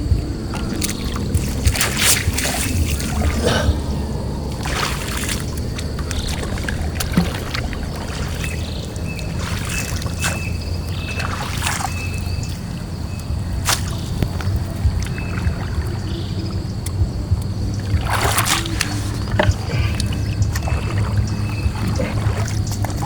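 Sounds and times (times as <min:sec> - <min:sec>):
steady low rumble: 0:00.0 - 0:23.0
water splashing and dripping: 0:00.0 - 0:23.0.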